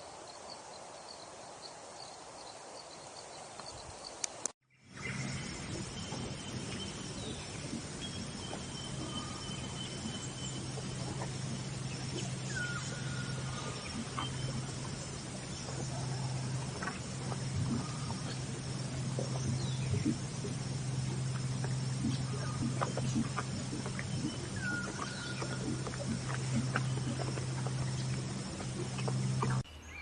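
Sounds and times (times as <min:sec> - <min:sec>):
low hum: 0:04.8 - 0:29.7
high whistling calls: 0:05.2 - 0:20.7, 0:21.4 - 0:29.6.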